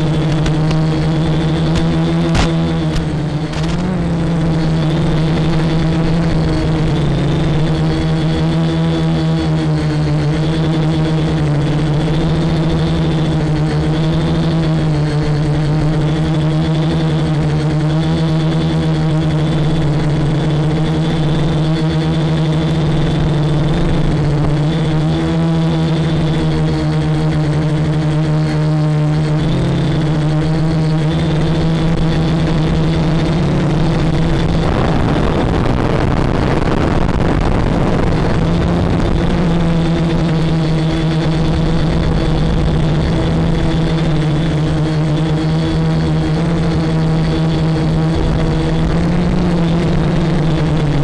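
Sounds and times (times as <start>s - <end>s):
quadcopter propellers buzzing: 0.0s - 51.0s.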